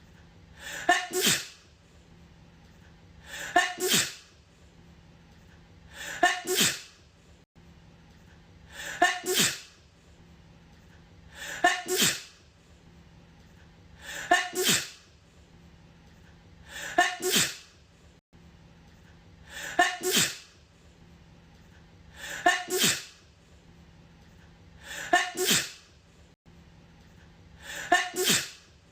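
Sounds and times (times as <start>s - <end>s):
woman sneezing: 0.6s - 1.6s, 3.3s - 4.3s, 6.0s - 7.0s, 8.8s - 9.8s, 11.4s - 12.4s, 14.1s - 15.0s, 16.7s - 17.7s, 19.6s - 20.5s, 22.2s - 23.2s, 24.9s - 25.9s, 27.7s - 28.7s.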